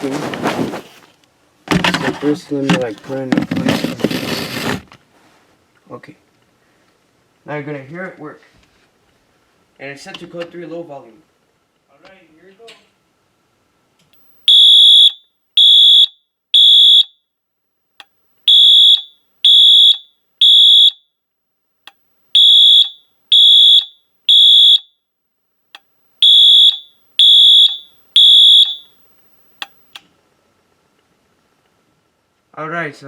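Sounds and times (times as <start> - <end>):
fire alarm horn beeps: 14.4 - 17.2, 18.5 - 21.1, 22.3 - 25.0, 26.2 - 29.0.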